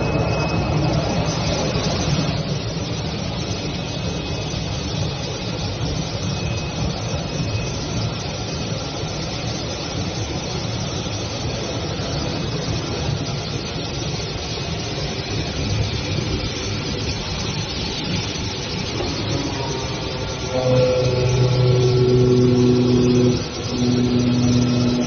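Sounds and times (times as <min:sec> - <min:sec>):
cutting machine running: 0:18.7 - 0:25.0.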